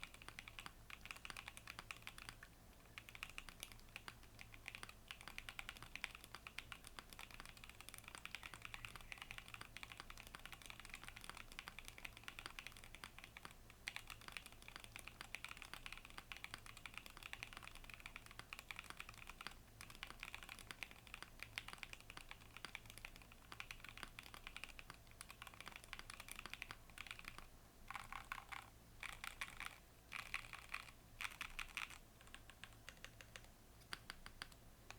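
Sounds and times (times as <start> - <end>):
mechanical keyboard typing: 0.0 - 34.9.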